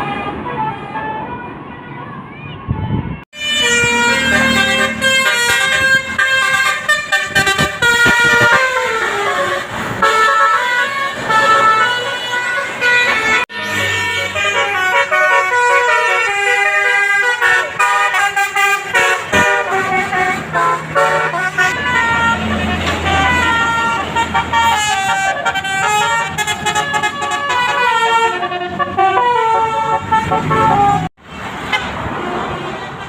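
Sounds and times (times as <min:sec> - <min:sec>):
musical air horn playing tune: 0:03.4 - 0:31.1.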